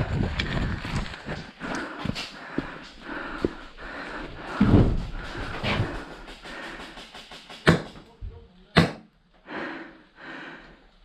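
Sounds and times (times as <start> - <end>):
footsteps: 0.0 - 8.2
person panting heavily: 0.3 - 7.4, 9.4 - 11.0.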